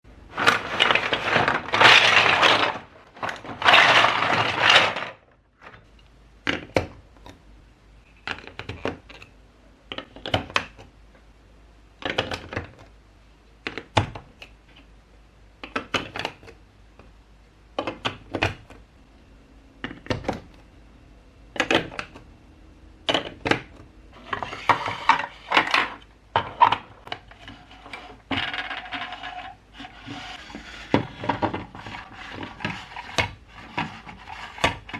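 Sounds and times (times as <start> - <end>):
loose blocks rattling: 0.3 - 6.9, 23.1 - 34.9
blocks clicking together: 8.2 - 10.9, 12.0 - 12.9, 13.6 - 14.9, 15.6 - 17.1, 17.7 - 18.8, 21.5 - 22.2.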